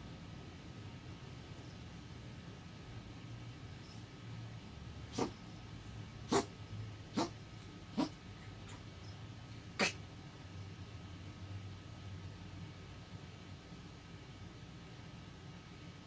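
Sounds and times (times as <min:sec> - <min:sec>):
pet coughing: 0:05.1 - 0:05.6, 0:06.2 - 0:10.0.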